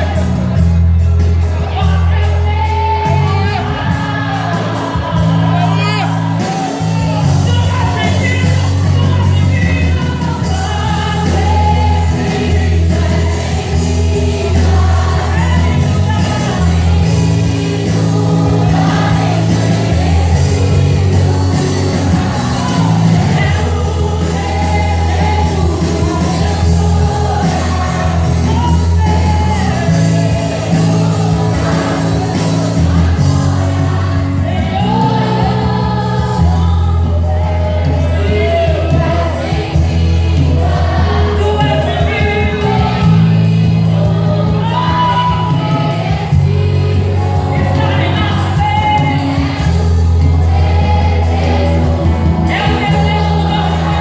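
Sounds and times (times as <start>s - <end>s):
backing singers: 0.0s - 54.0s
lead singer: 0.0s - 54.0s
steady bass line: 0.0s - 54.0s.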